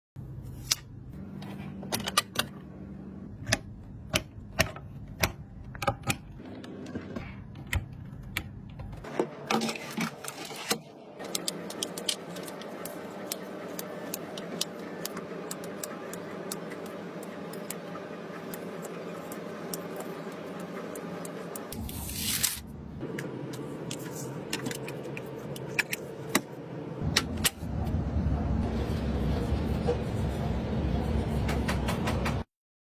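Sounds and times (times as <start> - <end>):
steady hum: 9.0 - 32.4.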